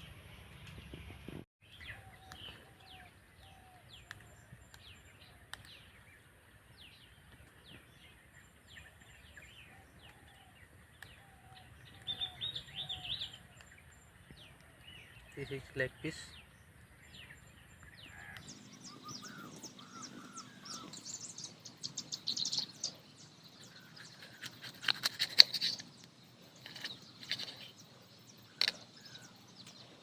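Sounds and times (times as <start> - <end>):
birds chirping: 0.0 - 30.0.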